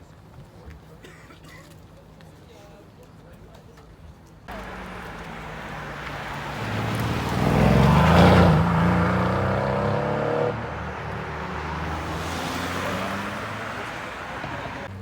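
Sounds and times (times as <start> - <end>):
sports car engine accelerating: 4.5 - 15.0.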